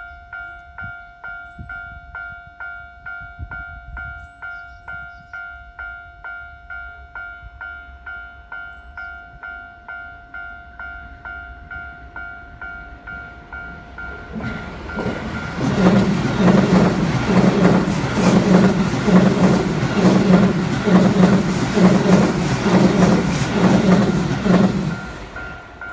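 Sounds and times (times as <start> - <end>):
train wheels clattering: 14.0 - 25.9.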